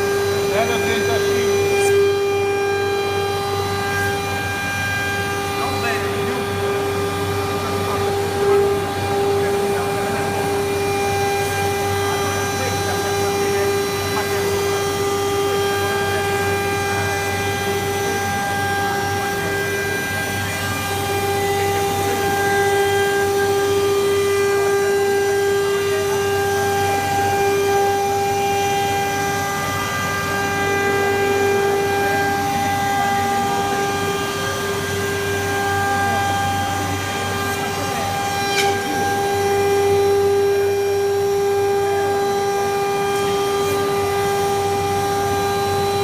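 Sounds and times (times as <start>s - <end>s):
machine whine: 0.0s - 46.0s
rushing machine noise: 0.0s - 46.0s.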